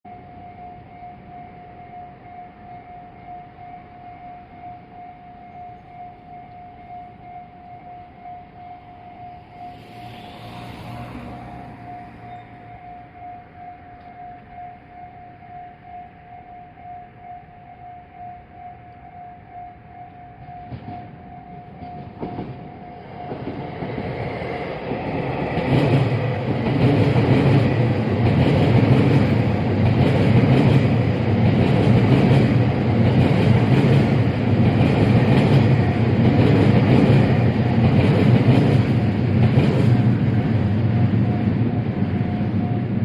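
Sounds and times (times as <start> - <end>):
electric train passing: 0.1 - 43.0
train wheels clacking: 20.4 - 40.7.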